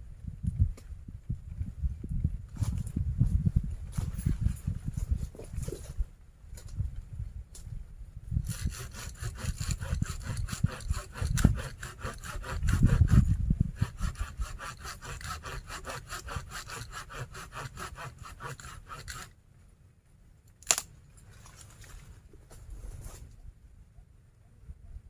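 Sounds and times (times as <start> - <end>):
hand saw cutting wood: 8.4 - 19.3.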